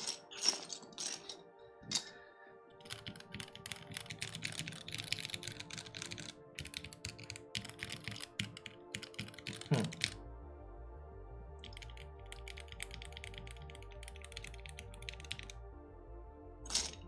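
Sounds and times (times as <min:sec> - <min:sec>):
background music: 0:00.0 - 0:17.0
mechanical keyboard clicking: 0:02.8 - 0:10.2, 0:11.6 - 0:15.5.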